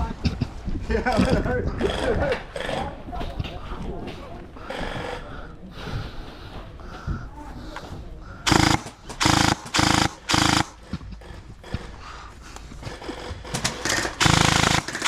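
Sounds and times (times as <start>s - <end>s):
gel blaster firing bursts: 8.5s - 10.8s, 13.8s - 15.0s.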